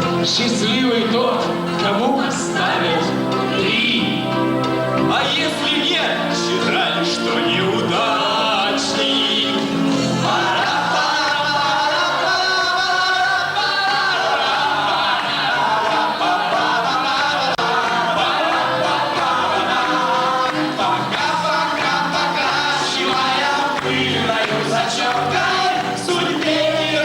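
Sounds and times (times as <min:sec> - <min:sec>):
voices singing with backing music: 0:00.0 - 0:27.0.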